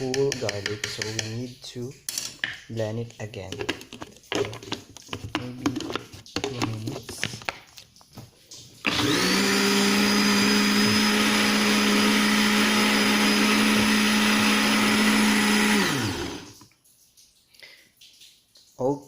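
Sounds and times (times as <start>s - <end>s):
blender motor running: 8.8s - 16.6s.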